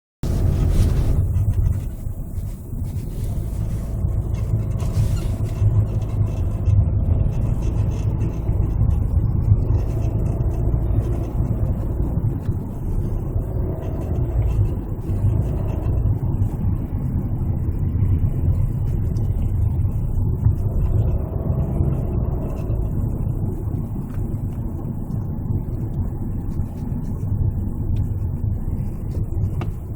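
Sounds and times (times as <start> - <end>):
suspension creaking: 0.2 - 17.0
road and drivetrain rumble: 0.2 - 29.9.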